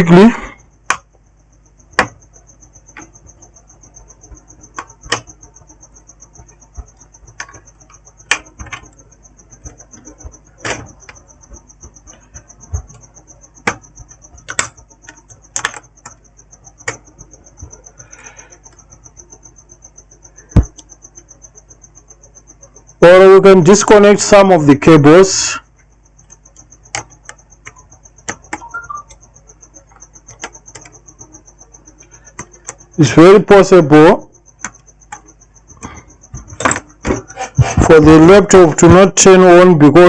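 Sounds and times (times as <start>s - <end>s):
high-pitched pulsing whine: 0.0s - 40.0s
small tools clicking and tapping: 1.9s - 2.3s, 2.9s - 18.9s, 25.8s - 33.0s, 34.6s - 37.9s.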